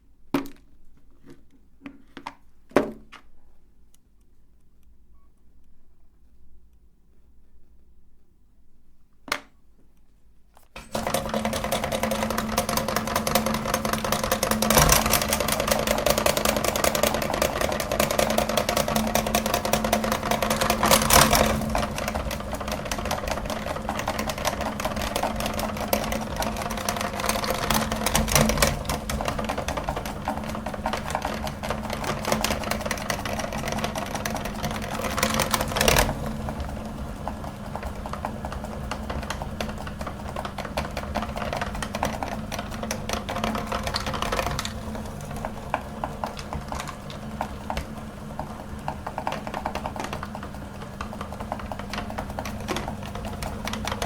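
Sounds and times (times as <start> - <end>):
meat grinder motor humming: 10.8 - 54.0.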